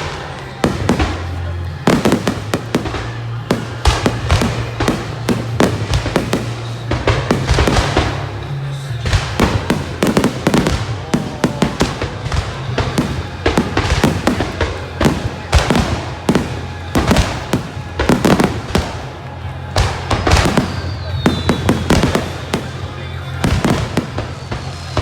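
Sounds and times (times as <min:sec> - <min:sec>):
fireworks bangs: 0:00.0 - 0:25.0.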